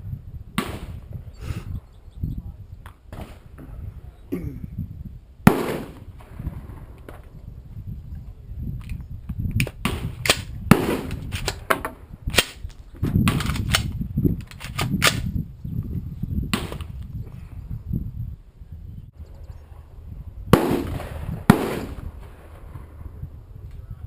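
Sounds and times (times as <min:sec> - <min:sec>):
wind rumble on microphone: 0:00.0 - 0:24.0
rifle action metallic clicks: 0:12.3 - 0:15.3.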